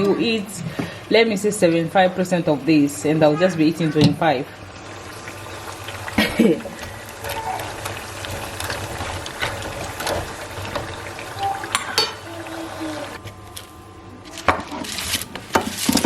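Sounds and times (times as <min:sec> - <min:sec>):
dishes and utensils clinking: 0:08.6 - 0:12.4.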